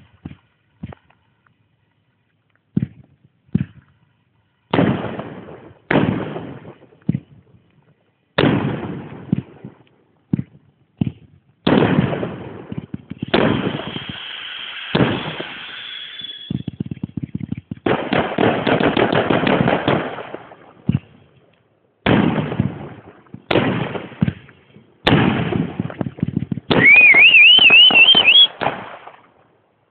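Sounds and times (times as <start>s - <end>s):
firework shells bursting: 8.4s - 21.5s, 22.1s - 29.4s
high whistle: 14.0s - 16.7s, 26.8s - 28.6s.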